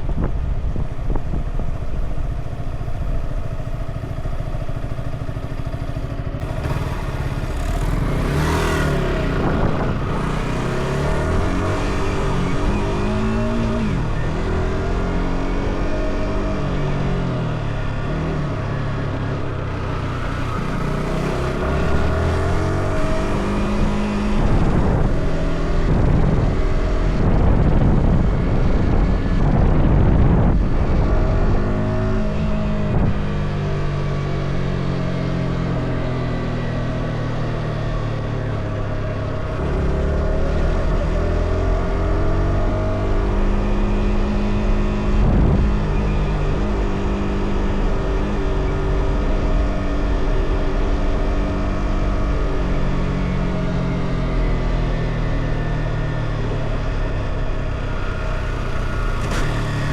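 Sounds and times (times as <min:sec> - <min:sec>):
wind on microphone: 0:00.0 - 0:04.0, 0:06.4 - 0:18.0, 0:20.2 - 0:34.8, 0:38.7 - 0:59.9
motorcycle engine revving: 0:00.0 - 0:59.9.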